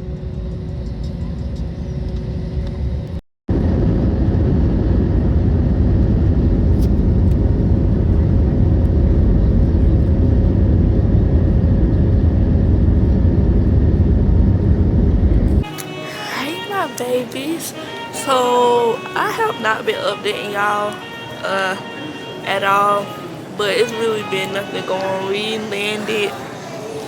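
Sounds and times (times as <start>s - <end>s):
jet engine rumble inside cabin: 0.0s - 15.7s.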